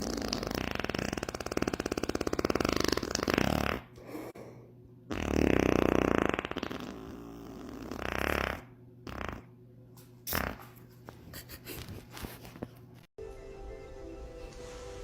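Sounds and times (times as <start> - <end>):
buzzy fluttering fart: 0.0 - 4.0, 5.1 - 9.6, 10.3 - 10.8.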